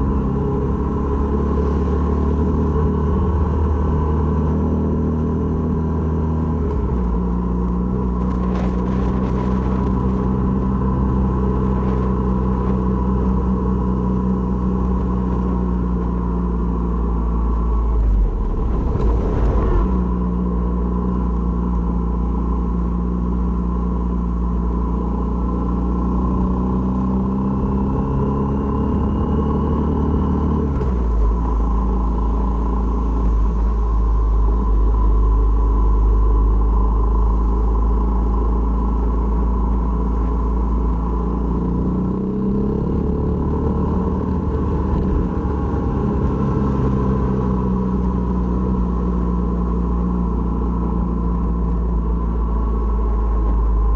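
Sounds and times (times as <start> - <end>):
motorcycle engine running: 0.0 - 30.3, 30.9 - 53.9
steady low rumble: 16.5 - 21.8.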